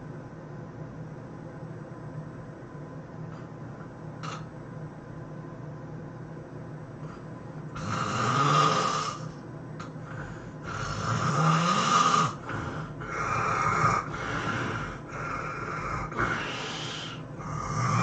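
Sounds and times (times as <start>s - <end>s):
person snoring loudly: 7.8s - 9.3s, 10.6s - 18.0s.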